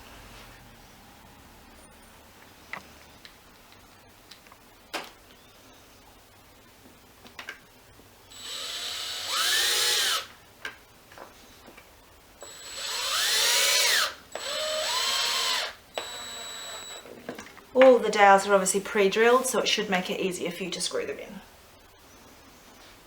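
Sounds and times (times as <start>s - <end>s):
drill driving screw into wood: 8.3s - 10.3s, 12.4s - 17.0s.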